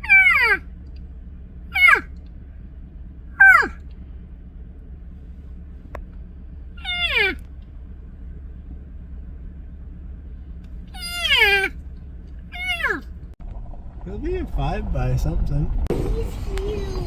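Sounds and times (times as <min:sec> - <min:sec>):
cat meowing: 0:00.0 - 0:00.6, 0:01.7 - 0:02.1, 0:03.4 - 0:03.8, 0:06.8 - 0:07.4, 0:10.9 - 0:11.7, 0:12.5 - 0:13.0
steady low hum: 0:00.0 - 0:17.0.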